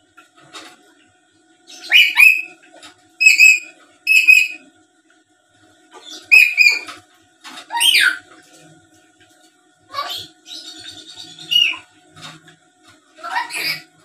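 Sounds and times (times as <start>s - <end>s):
lory high-pitched calls: 1.7s - 2.6s, 3.2s - 4.6s, 6.0s - 7.0s, 10.0s - 11.9s, 13.2s - 14.0s.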